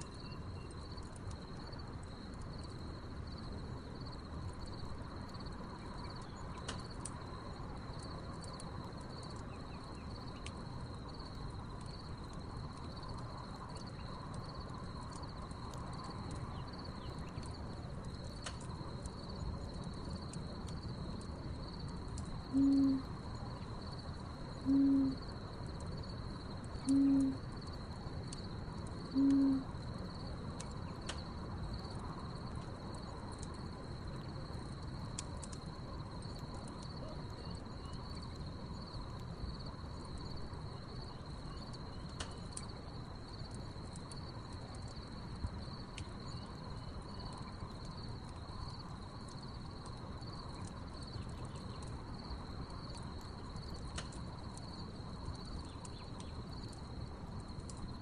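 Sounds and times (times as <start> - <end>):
crickets chirping: 0.0 - 58.0
wood fire crackling: 0.0 - 58.0
owl hooting: 22.5 - 23.1, 24.7 - 25.2, 26.9 - 27.4, 29.2 - 29.7.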